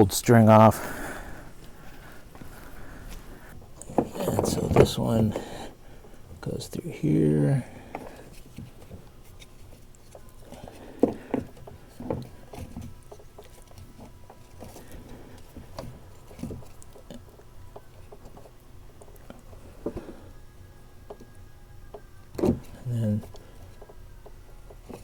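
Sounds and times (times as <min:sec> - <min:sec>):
light taps clicks and rustles: 0:01.6 - 0:05.5.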